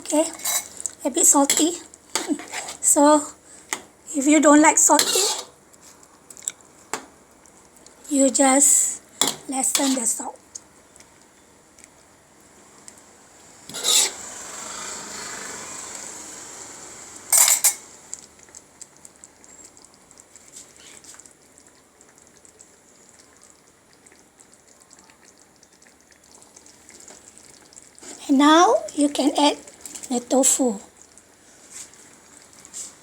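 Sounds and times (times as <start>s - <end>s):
utensil scraping a pot: 0.0s - 3.1s, 4.8s - 5.6s, 9.2s - 10.2s, 13.7s - 16.4s, 17.3s - 17.9s
light clicks of stirring: 0.6s - 2.6s, 10.5s - 12.0s
simmering hiss: 7.6s - 18.3s.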